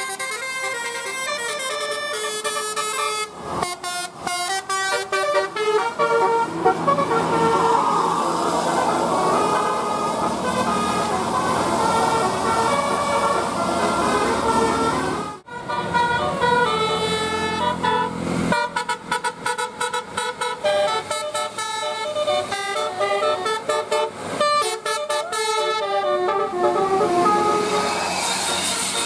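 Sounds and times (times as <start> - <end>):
multi-tone air horn melody: 0.0 - 29.0.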